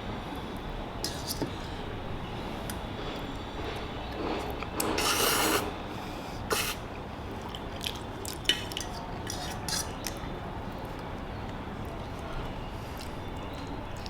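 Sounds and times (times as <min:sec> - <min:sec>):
person slurping noodles: 0:04.8 - 0:05.8, 0:06.4 - 0:06.8
wet chewing clicks: 0:06.5 - 0:14.0.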